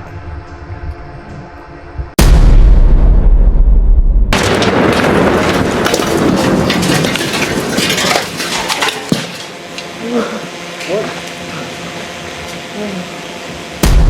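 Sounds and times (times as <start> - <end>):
explosion low boom: 2.1 - 6.8
loud crackling rushing noise: 2.2 - 7.9.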